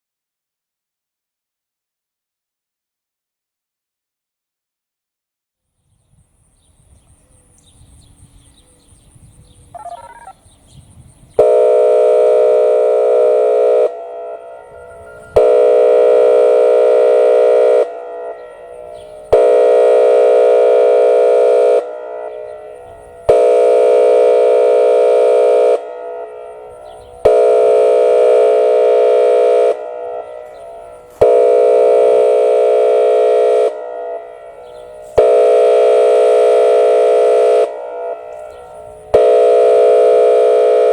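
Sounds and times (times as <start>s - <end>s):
siren air horn blasts: 9.8s - 10.4s, 11.4s - 40.9s.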